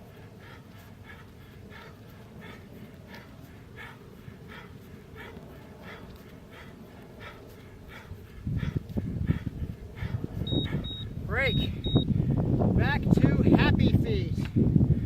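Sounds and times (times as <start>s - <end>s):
person breathing hard: 0.0s - 11.0s.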